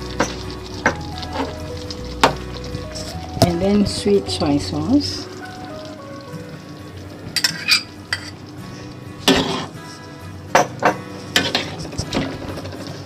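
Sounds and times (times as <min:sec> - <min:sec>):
metal utensil clinking on pot: 0:07.4 - 0:08.4.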